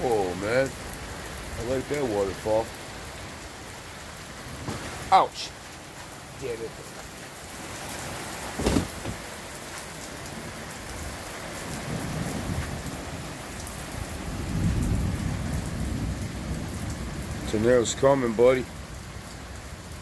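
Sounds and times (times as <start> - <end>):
heavy rain pouring: 0.0 - 20.0
low thunder rumbling: 11.0 - 20.0.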